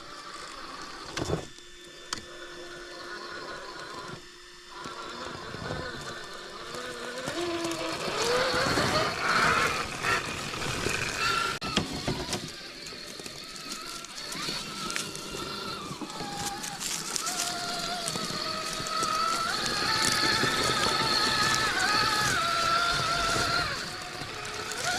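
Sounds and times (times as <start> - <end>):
electric motor whining: 0.0 - 24.9
clicks and knocks on rocks: 11.7 - 24.9.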